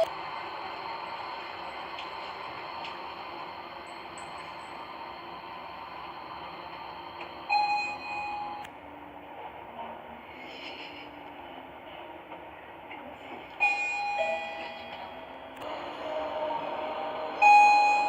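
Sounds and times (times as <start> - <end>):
lift background noise: 0.0 - 18.0.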